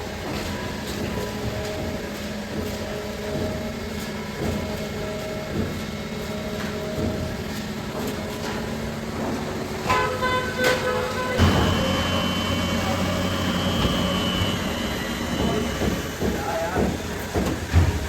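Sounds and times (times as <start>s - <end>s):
factory machinery running: 0.0s - 18.0s
machinery knocks: 8.1s - 18.0s.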